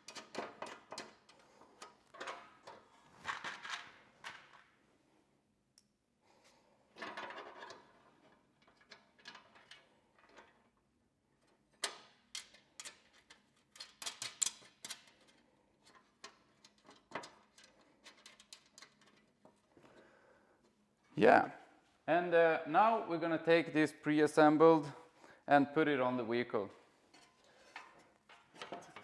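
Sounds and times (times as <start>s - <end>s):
metal plates clicking and knocking: 0.0s - 4.6s, 7.0s - 10.7s, 11.4s - 19.6s, 27.1s - 29.0s.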